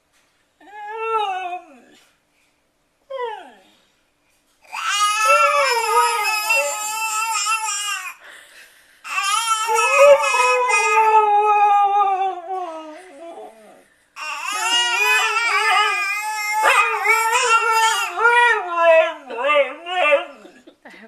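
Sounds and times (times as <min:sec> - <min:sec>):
dog howling: 0:04.8 - 0:07.7, 0:09.3 - 0:20.6.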